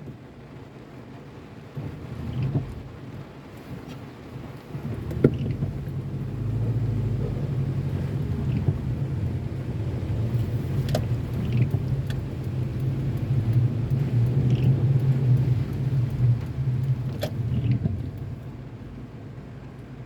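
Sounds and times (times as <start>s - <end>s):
car driving on wet street: 0.0s - 20.0s.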